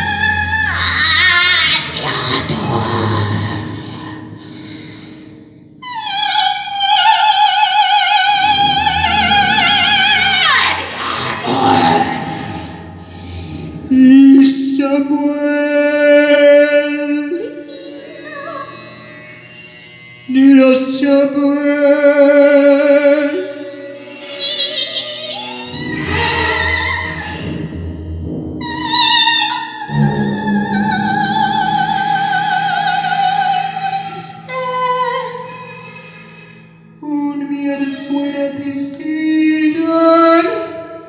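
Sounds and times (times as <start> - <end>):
operatic singing with vibrato: 0.0 - 19.3, 20.3 - 27.7, 28.6 - 41.0.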